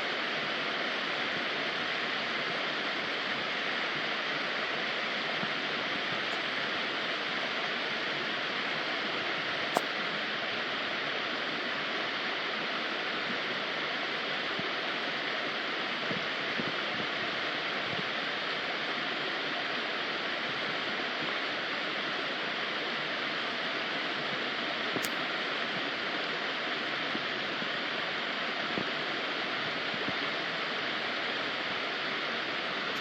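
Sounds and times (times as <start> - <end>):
short sharp click: 25.0 - 25.2.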